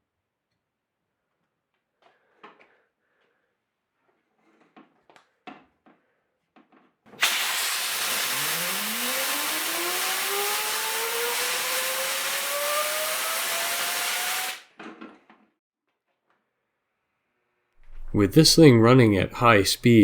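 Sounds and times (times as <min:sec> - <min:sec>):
compressed air hissing from nozzle: 0:07.2 - 0:14.6
rotor whine rising in pitch: 0:07.6 - 0:14.6.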